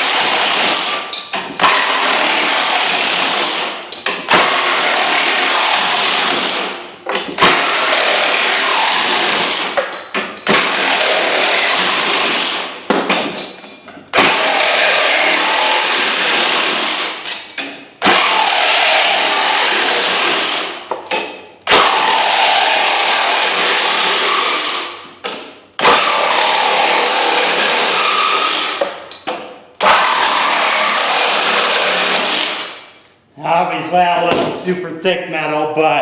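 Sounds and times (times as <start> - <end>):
reciprocating saw cutting sheet metal: 0.0 - 6.8, 7.4 - 9.8, 10.5 - 12.8, 14.2 - 17.2, 18.0 - 20.9, 21.7 - 24.9, 25.8 - 28.8, 29.8 - 32.8.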